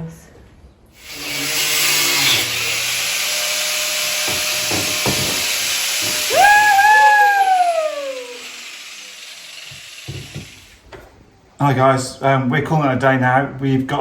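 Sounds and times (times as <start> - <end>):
angle grinder grinding metal: 1.0 - 10.8
knocks: 4.2 - 6.3, 9.7 - 10.6
grinder motor whine spinning down: 5.3 - 10.8.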